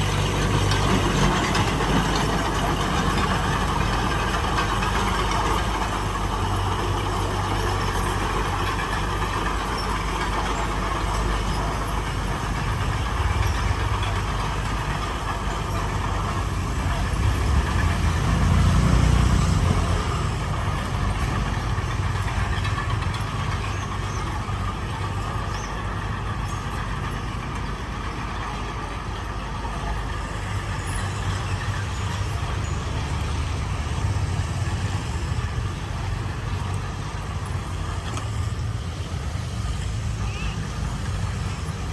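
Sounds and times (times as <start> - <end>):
heavy diesel machinery running: 0.0 - 41.9.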